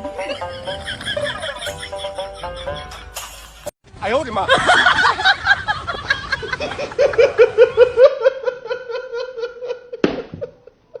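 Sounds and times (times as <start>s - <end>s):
high-pitched laughter: 0.0s - 3.7s.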